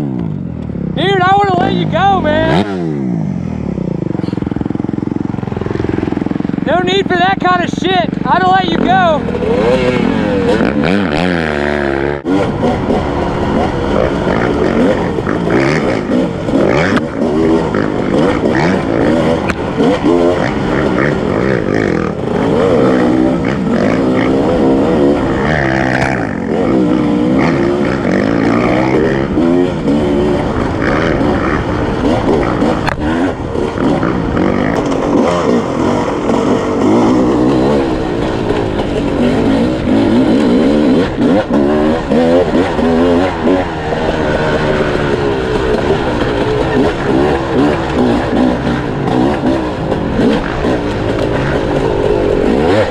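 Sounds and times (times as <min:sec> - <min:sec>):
dirt bike engine revving: 0:00.0 - 0:52.9.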